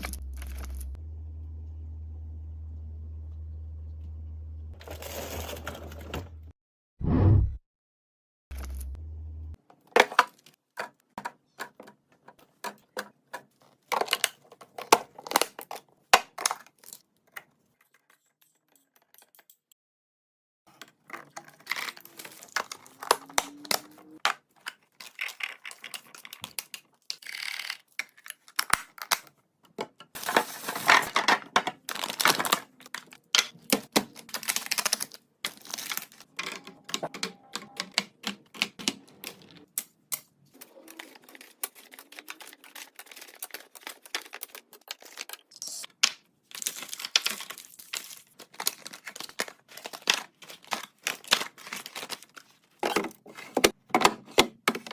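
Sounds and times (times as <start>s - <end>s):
items clattering in a fridge: 4.7s - 6.5s, 29.7s - 39.8s, 46.5s - 54.9s.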